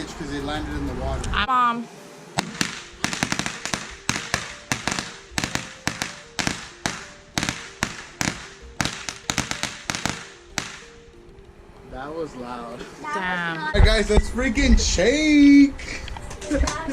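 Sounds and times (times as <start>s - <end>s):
firecrackers banging: 2.4s - 11.0s.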